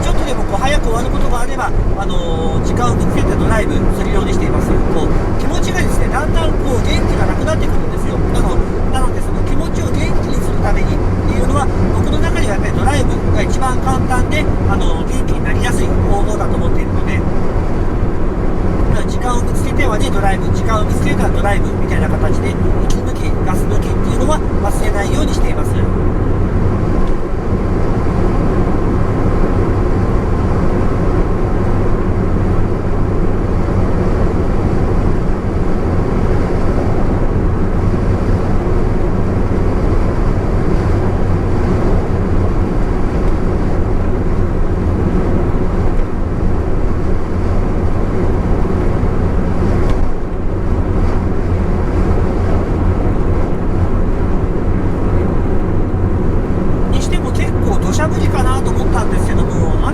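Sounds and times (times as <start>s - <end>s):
car engine and tyre rumble: 0.0s - 59.9s
wind noise: 0.0s - 59.9s.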